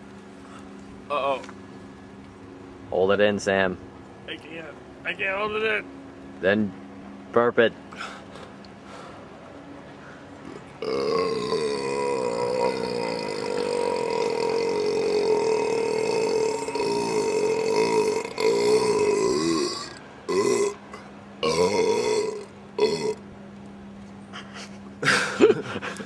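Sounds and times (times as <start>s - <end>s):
child burping: 10.8s - 23.2s.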